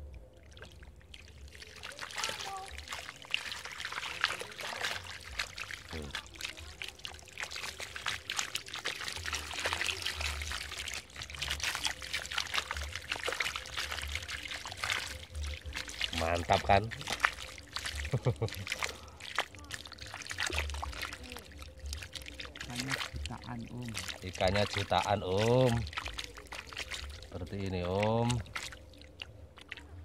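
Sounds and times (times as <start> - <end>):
water splashing and trickling: 0.0 - 30.0.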